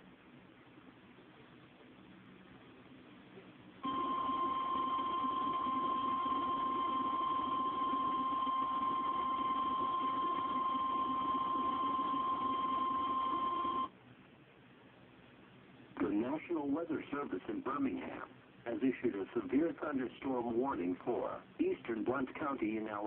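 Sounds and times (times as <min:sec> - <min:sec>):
steady high-pitched alarm tone: 0:03.8 - 0:13.9.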